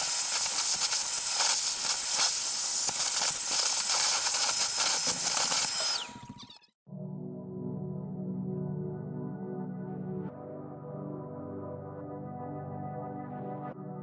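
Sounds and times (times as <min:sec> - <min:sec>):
vacuum cleaner whine: 0:00.0 - 0:06.5.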